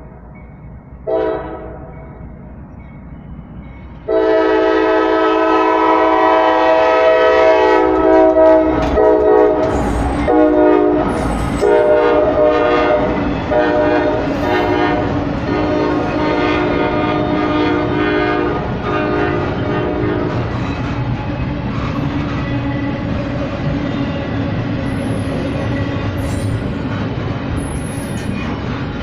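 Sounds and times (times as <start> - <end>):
locomotive air horn chord: 1.0 - 1.9, 4.1 - 20.4.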